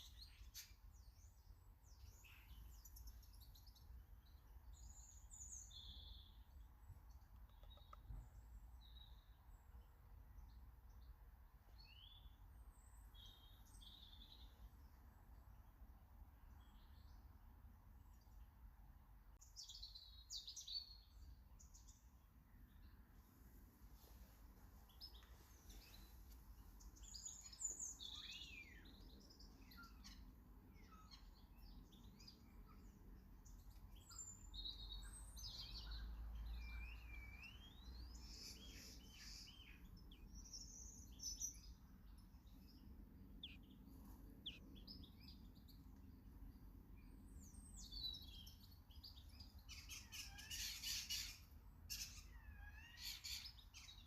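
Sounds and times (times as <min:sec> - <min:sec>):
birds chirping and calling: 0:47.0 - 0:54.0.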